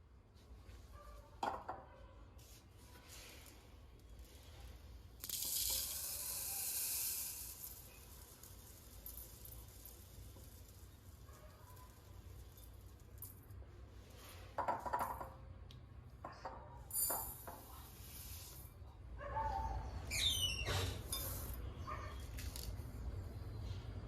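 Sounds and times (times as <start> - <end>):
short squeak: 20.0 - 22.4.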